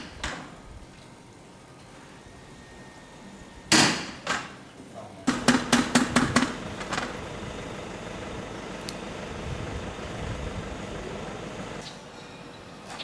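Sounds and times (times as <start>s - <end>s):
hammering knocks: 5.3s - 7.1s.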